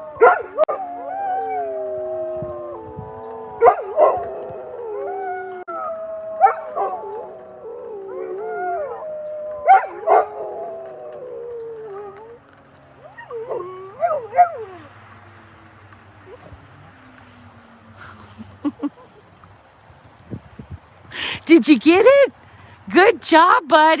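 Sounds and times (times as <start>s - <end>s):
dogs howling: 0.0s - 15.1s
dogs yipping: 9.6s - 12.4s.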